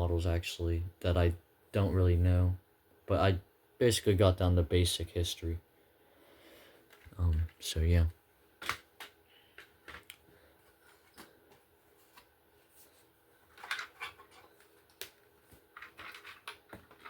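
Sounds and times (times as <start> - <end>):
small objects clicking and rustling: 13.5 - 17.0.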